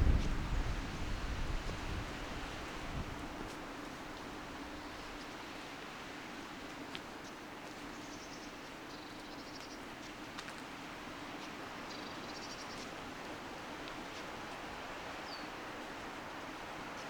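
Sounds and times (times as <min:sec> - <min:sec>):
wind rushing: 0:00.0 - 0:03.2.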